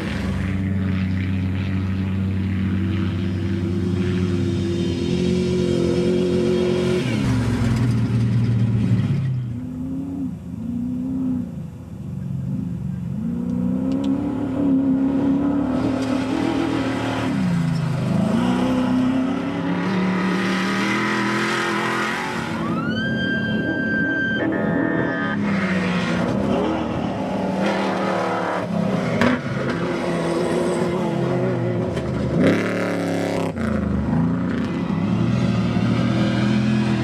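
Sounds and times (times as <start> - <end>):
truck engines running hard: 0.0 - 37.0.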